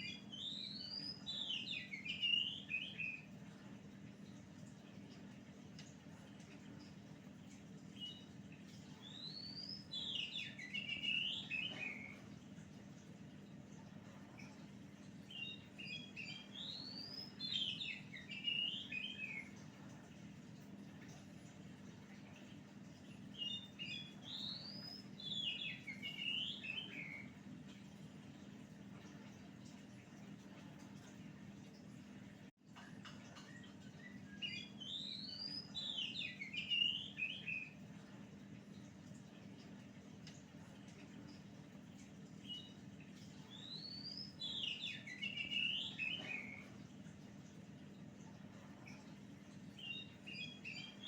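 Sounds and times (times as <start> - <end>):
bird singing chirps and whistles: 0.0 - 3.3, 8.0 - 8.3, 9.0 - 12.2, 15.3 - 19.6, 23.3 - 27.4, 33.5 - 37.8, 42.4 - 42.8, 43.4 - 46.7, 49.8 - 51.0.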